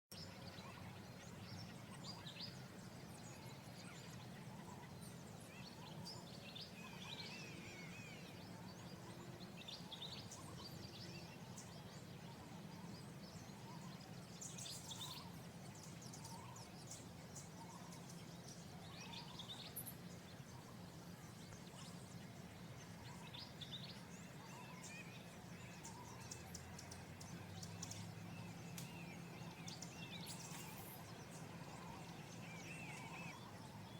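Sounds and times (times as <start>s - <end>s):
faint birds chirping: 0.1s - 33.9s.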